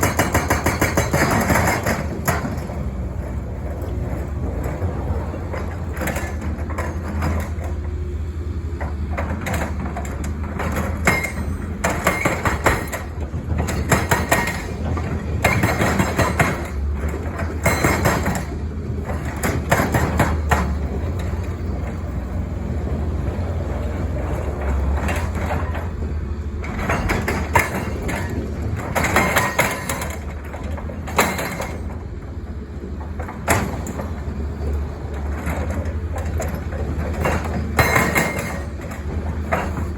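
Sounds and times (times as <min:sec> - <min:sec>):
hydraulic breaker hammering: 0:00.0 - 0:02.7, 0:10.6 - 0:18.6, 0:35.6 - 0:39.9
excavator diesel engine running: 0:00.0 - 0:39.9.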